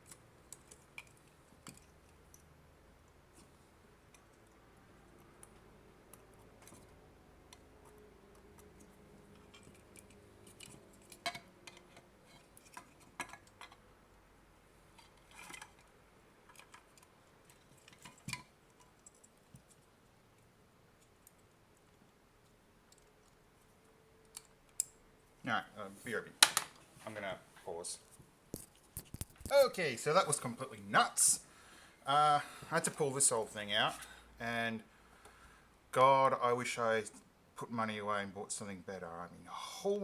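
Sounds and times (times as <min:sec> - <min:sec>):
small clicks and taps: 0:28.5 - 0:29.5.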